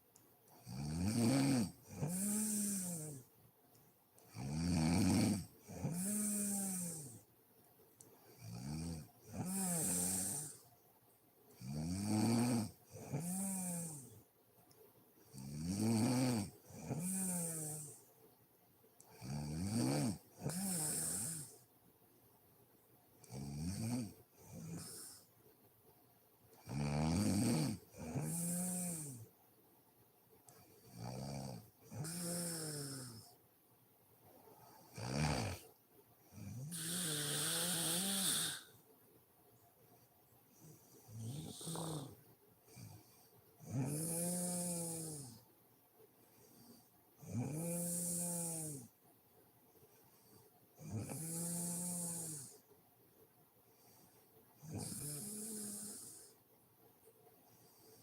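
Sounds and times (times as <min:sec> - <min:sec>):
woman snoring: 0:00.7 - 0:03.3, 0:04.4 - 0:07.2, 0:08.4 - 0:10.6, 0:11.7 - 0:14.1, 0:15.5 - 0:18.0, 0:19.2 - 0:21.5, 0:26.7 - 0:29.2, 0:31.0 - 0:33.3, 0:34.9 - 0:35.6, 0:36.4 - 0:38.7, 0:41.1 - 0:42.2, 0:43.7 - 0:45.4, 0:47.2 - 0:48.9, 0:50.9 - 0:52.5, 0:54.6 - 0:56.3
hissing breath: 0:36.7 - 0:38.8.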